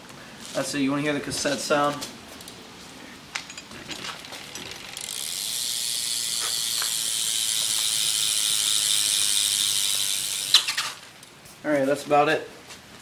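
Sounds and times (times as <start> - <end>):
bike hub ratcheting buzz: 3.8 - 11.3.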